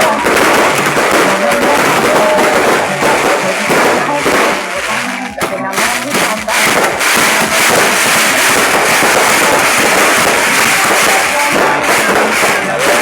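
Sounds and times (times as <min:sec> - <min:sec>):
fireworks crackling: 0:00.0 - 0:13.0.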